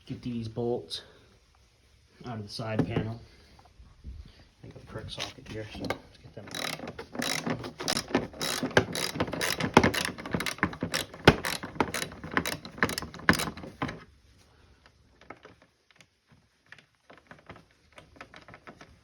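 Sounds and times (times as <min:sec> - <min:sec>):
socket ratchet wrench clicking: 0:06.5 - 0:13.6.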